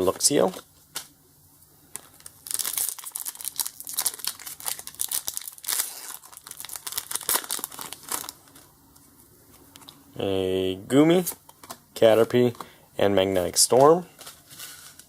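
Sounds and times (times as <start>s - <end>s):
wrapper crinkling and tearing: 1.9s - 8.7s, 14.2s - 15.0s.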